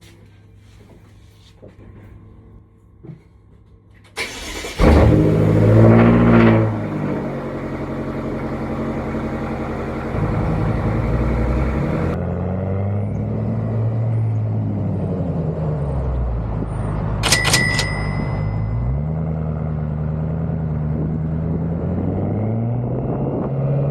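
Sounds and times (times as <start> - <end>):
car engine starting and idling: 4.2 - 12.2.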